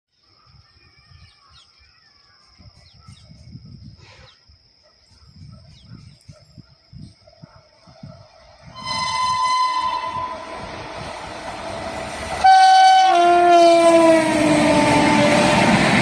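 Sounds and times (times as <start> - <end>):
wind gusting on microphone: 2.6 - 4.2, 5.1 - 16.0
distant train horn: 8.8 - 11.6, 12.3 - 16.0.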